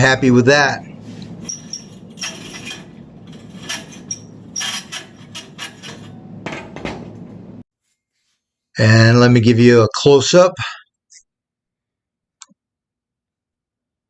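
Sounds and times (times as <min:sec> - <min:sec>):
metal knocks and clinks: 0:01.3 - 0:07.5.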